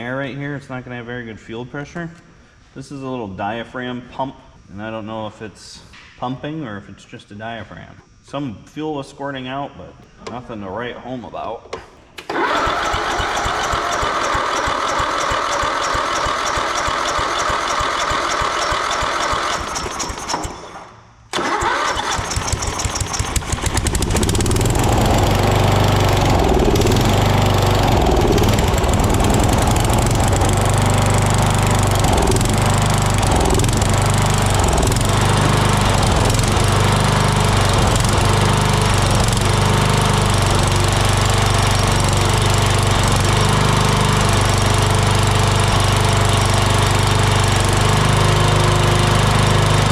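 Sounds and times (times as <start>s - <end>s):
mower engine running: 12.2s - 49.9s
starter motor cranking: 12.2s - 49.9s.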